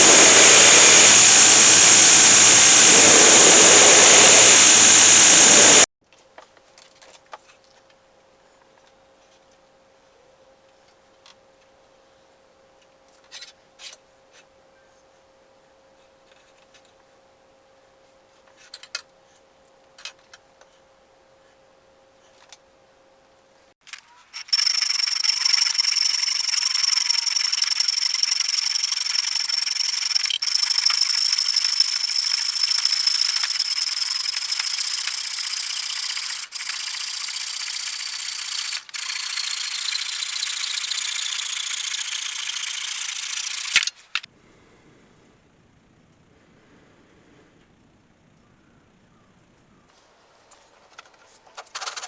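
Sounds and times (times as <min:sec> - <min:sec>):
power grinder on steel blade: 0:00.0 - 0:05.8, 0:24.4 - 0:44.3
faint hum: 0:00.0 - 0:05.9, 0:24.4 - 0:44.2.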